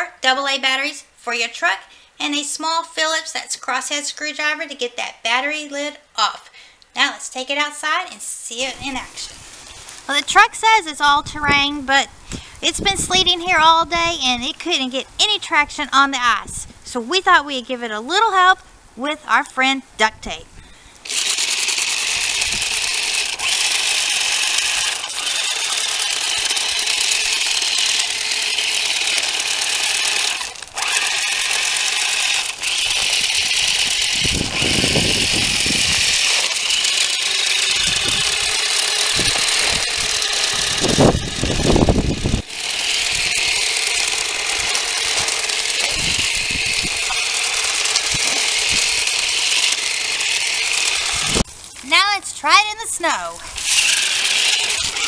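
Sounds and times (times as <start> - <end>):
toy truck motor whirring: 21.0 - 51.5, 53.4 - 55.0.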